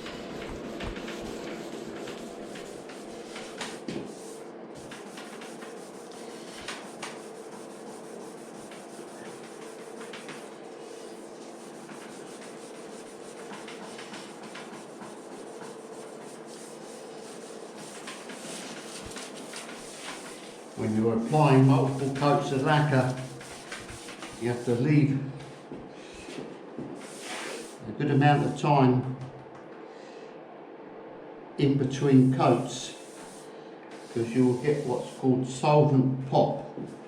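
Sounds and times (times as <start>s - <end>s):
sandpaper rubbing: 0.2s - 24.7s, 27.0s - 27.8s.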